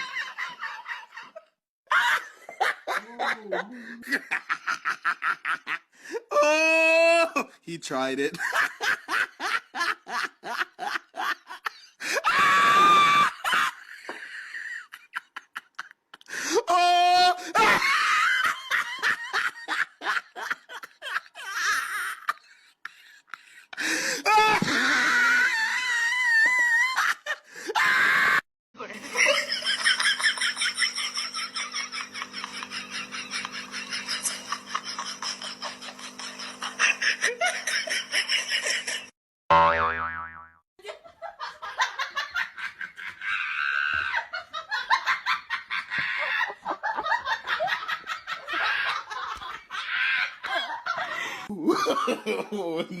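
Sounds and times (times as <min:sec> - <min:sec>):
person laughing: 0:01.4 - 0:07.5, 0:16.8 - 0:27.4, 0:28.8 - 0:39.1, 0:45.7 - 0:53.0
high-pitched shriek of laughter: 0:12.2 - 0:13.5, 0:43.2 - 0:44.3.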